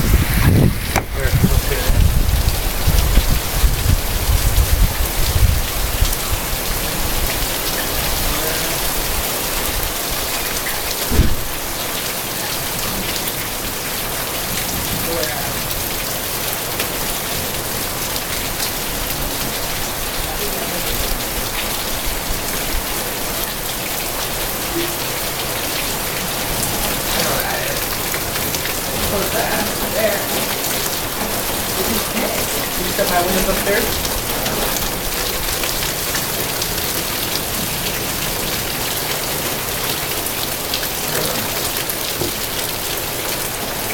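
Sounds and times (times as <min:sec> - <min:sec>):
heavy rain pouring: 0:00.0 - 0:43.9
dull thump: 0:11.1 - 0:11.5.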